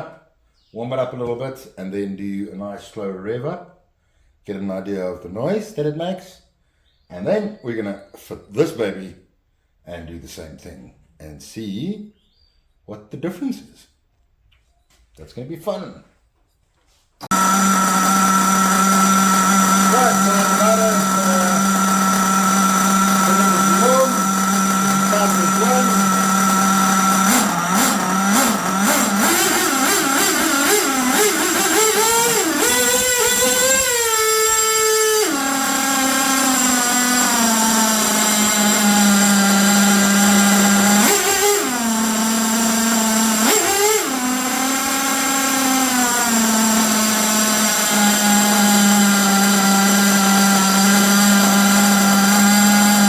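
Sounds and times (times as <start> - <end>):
nitro engine revving and idling: 17.2 - 53.0.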